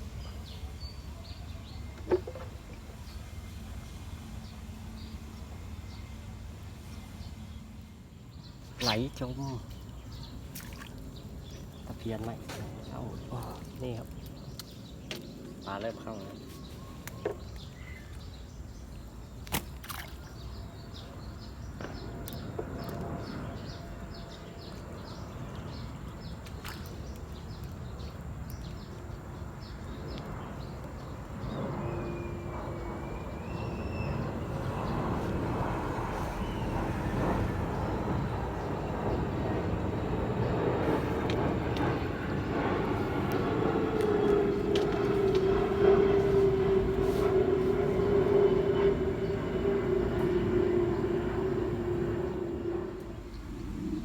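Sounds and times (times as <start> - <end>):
bird chirp: 8.3 - 54.0
steady hum: 20.5 - 54.0
train rumbling: 30.4 - 54.0.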